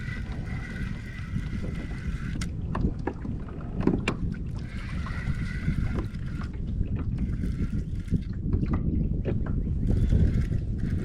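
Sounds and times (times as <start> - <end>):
fishing reel whirring: 0.0 - 2.8, 4.5 - 8.3, 9.8 - 11.0
wind buffeting microphone: 0.0 - 11.0.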